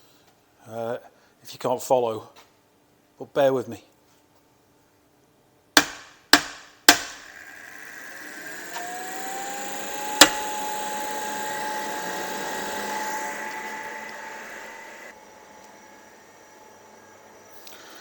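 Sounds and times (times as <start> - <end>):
sharp knocks on fan unit: 5.8 - 7.2, 10.2 - 10.5
fans whining and humming: 5.8 - 18.0.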